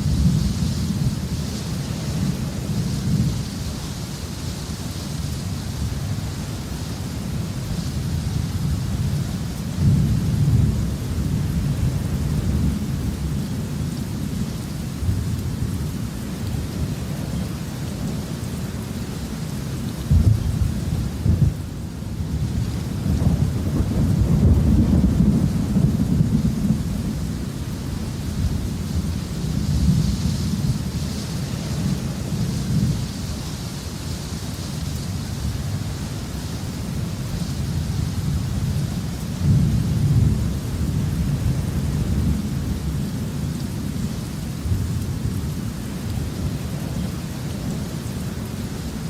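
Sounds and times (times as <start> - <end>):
low rolling thunder: 0.0 - 3.6, 8.1 - 14.4, 20.0 - 33.2, 37.0 - 47.9
steady rain: 0.0 - 49.0.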